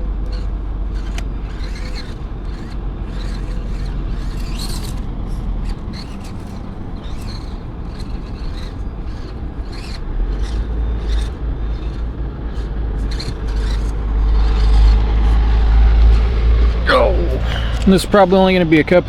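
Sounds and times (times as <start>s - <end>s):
heavy low rumble: 0.0s - 19.0s
tires scraping and clicking on terrain: 0.0s - 19.0s.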